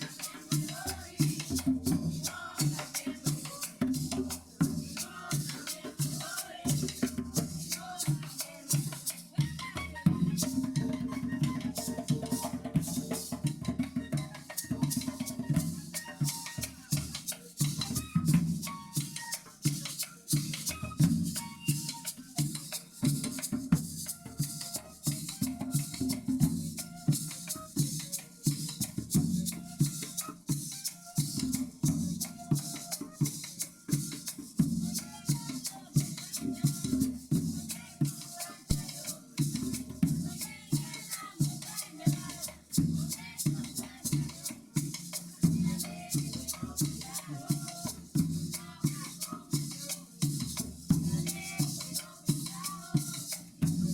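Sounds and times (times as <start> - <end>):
hand drums: 0.0 - 53.9
maraca: 0.0 - 53.9
flutes playing a melody: 6.0 - 39.2.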